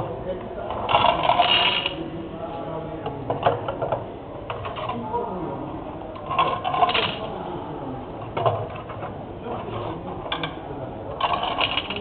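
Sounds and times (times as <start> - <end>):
small mechanism clicking and rattling: 6.2 - 7.3, 11.2 - 12.0.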